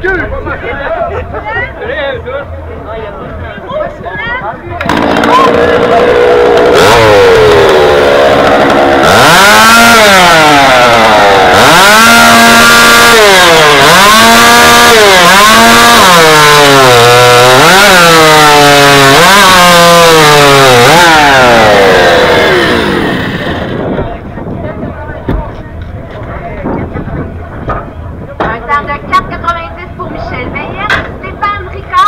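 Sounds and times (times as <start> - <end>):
chainsaw cutting through log: 4.8 - 24.0.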